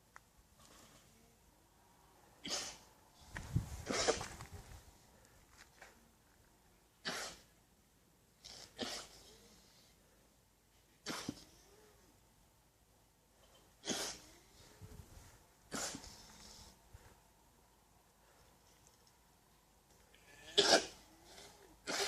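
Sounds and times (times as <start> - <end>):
alpacas sneezing: 2.4 - 2.9, 3.8 - 4.5, 7.0 - 7.6, 8.4 - 9.5, 11.0 - 11.8, 13.8 - 14.7, 15.7 - 16.7, 20.2 - 22.0.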